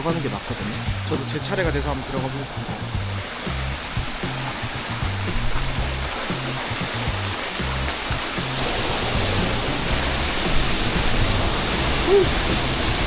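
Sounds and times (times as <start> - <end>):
background music bass notes: 0.0 - 13.0
waterfall roaring: 0.0 - 13.0.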